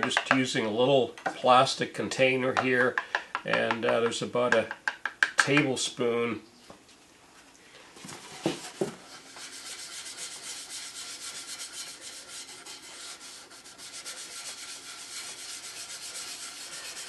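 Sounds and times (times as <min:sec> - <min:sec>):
cloth rubbing wood: 0:08.0 - 0:17.0.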